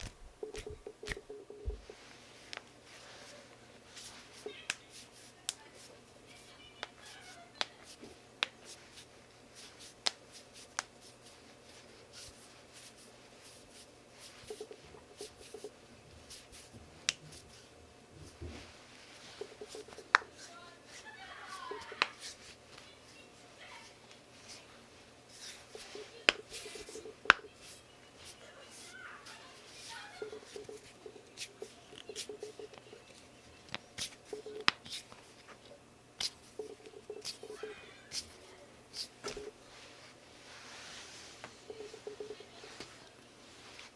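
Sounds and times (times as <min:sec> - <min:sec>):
knuckles cracking: 0:00.0 - 0:01.9.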